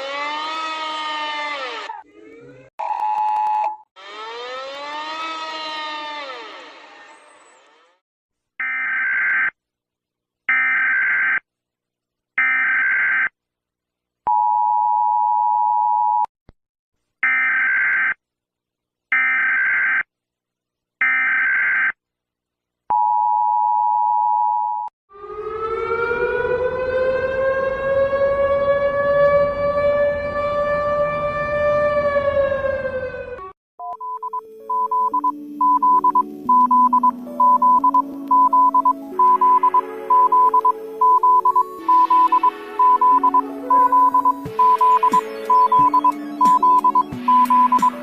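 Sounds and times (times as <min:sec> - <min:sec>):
siren tone: 0:24.3 - 0:48.0
data tone bursts: 0:33.9 - 0:48.0.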